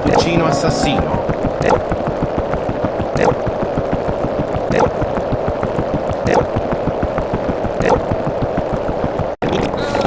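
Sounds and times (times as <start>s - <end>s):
overlapping looped sound effects: 0.0s - 2.3s.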